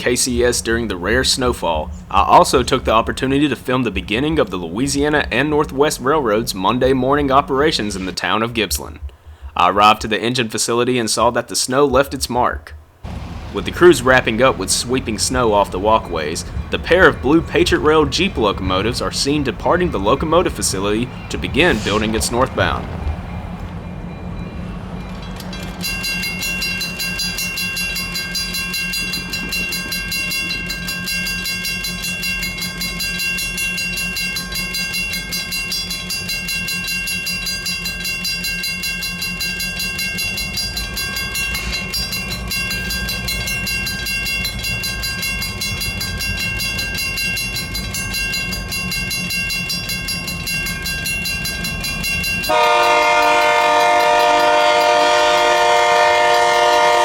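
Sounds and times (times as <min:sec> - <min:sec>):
diesel locomotive engines rumbling: 0:00.0 - 0:57.0
locomotive bell ringing: 0:00.0 - 0:57.0
loud air horn: 0:52.5 - 0:57.0.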